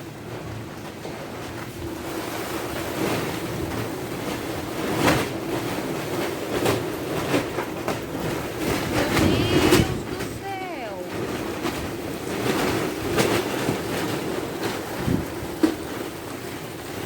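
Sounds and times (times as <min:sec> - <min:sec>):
storm wind buffeting microphone: 0:08.1 - 0:16.2.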